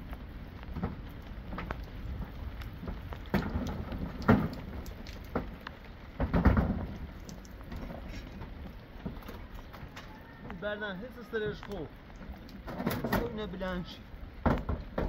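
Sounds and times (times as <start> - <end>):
rain falling: 0.0 - 15.0
heavy thuds and knocks: 6.2 - 7.0.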